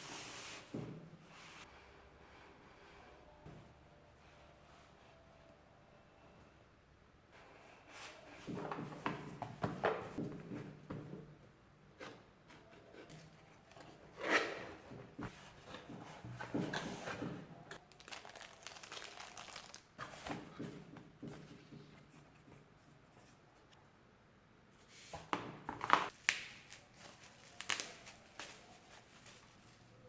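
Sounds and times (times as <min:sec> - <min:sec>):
packaging crinkling and rustling: 0:17.8 - 0:20.3, 0:25.7 - 0:29.9.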